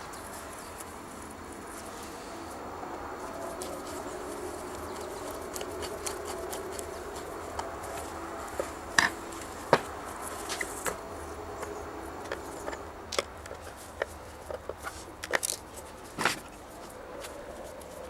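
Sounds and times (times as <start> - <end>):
faint background hum: 0.0 - 18.0
scrape: 1.7 - 2.6
tools and parts clicking: 5.5 - 11.0, 11.6 - 16.5.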